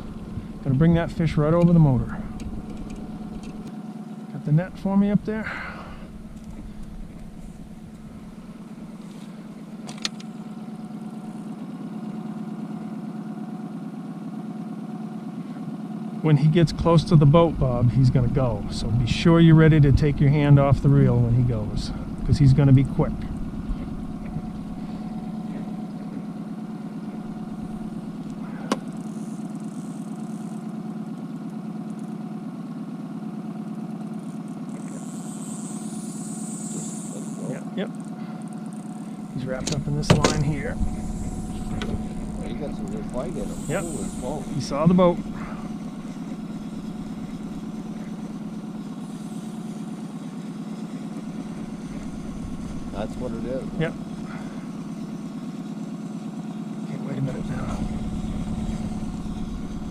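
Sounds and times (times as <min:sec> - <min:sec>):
outboard motor running: 0:00.0 - 0:59.9
high hiss: 0:43.1 - 0:46.9.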